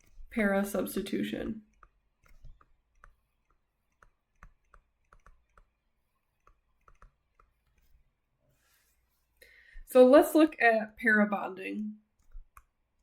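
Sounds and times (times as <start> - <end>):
pen clicking and tapping: 1.7 - 7.9.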